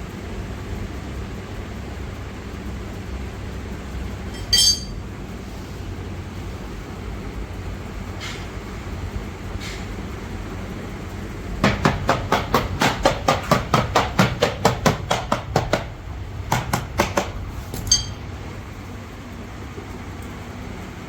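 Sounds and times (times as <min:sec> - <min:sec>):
steady low hum: 0:00.0 - 0:21.0
ringing hammer strike: 0:04.3 - 0:05.0, 0:17.8 - 0:18.3
rapid hammering on metal: 0:11.5 - 0:18.3.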